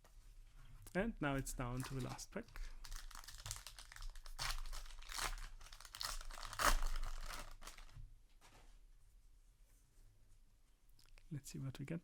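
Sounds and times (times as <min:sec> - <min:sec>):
foil pack tearing and crinkling: 0:01.8 - 0:07.9.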